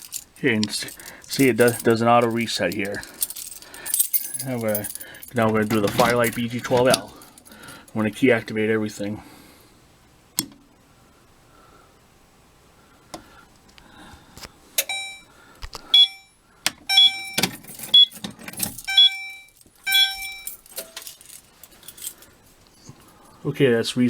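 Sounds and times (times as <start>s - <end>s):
key rattling and clicking: 0.0s - 8.0s, 17.2s - 22.4s
fire alarm tone pulses: 14.8s - 15.3s, 15.9s - 18.2s, 18.8s - 20.6s.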